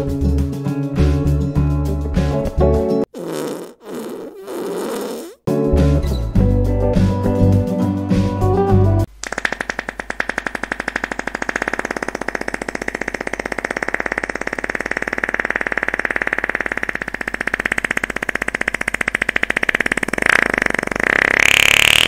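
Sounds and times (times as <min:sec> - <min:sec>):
long rattling fart: 0:03.1 - 0:05.5, 0:09.3 - 0:22.0.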